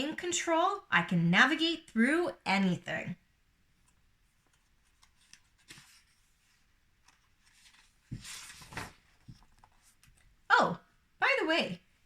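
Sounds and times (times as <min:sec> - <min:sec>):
rustling: 0:03.8 - 0:10.3.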